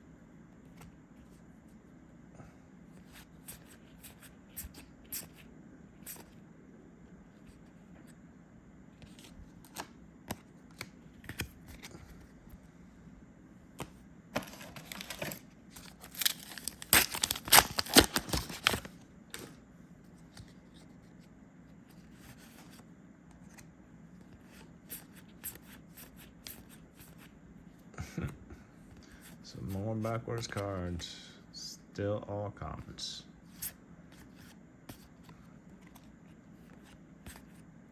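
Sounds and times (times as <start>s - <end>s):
foil pack tearing and crinkling: 14.4s - 18.9s.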